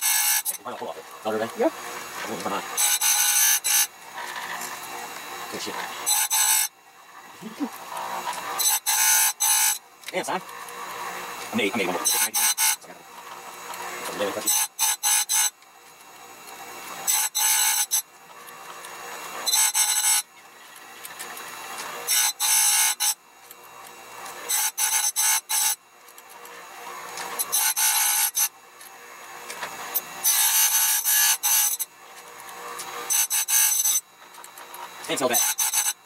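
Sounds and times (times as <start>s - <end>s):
file rasping on saw chain: 0.0s - 0.6s, 2.4s - 5.2s, 5.9s - 6.7s, 7.7s - 9.8s, 10.4s - 12.9s, 13.6s - 15.5s, 17.0s - 23.2s, 24.2s - 28.5s, 29.8s - 36.0s.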